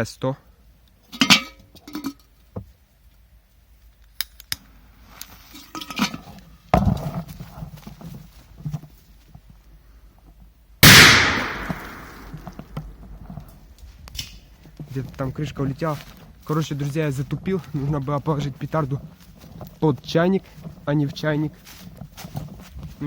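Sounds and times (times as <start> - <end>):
firecracker exploding in metal kettle: 10.8 - 12.6.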